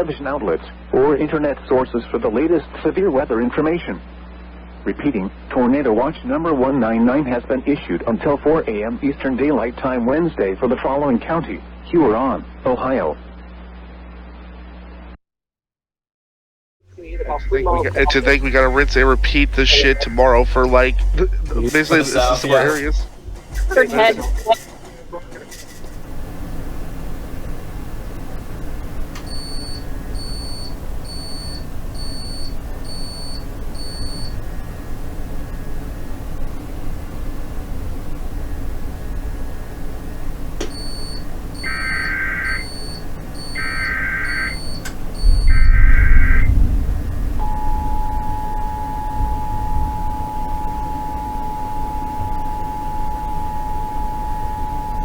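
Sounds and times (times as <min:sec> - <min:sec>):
low background hum and hiss: 0:00.0 - 0:15.2, 0:17.0 - 0:55.0
steady low rumble: 0:17.0 - 0:43.8, 0:44.6 - 0:55.0
short high-pitched beeps: 0:29.3 - 0:34.4, 0:40.7 - 0:46.5
two-tone alert signal: 0:40.7 - 0:46.5.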